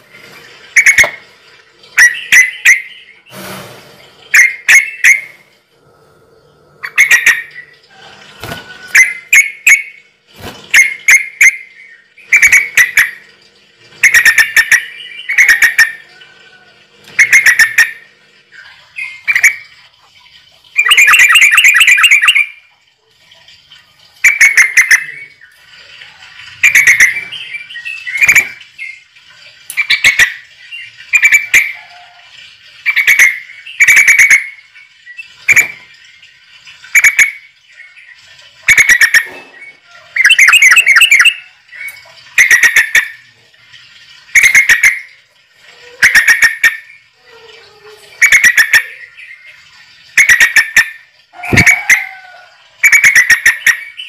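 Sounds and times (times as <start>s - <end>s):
bird chirping rapidly: 20.8s - 22.6s, 37.0s - 43.2s.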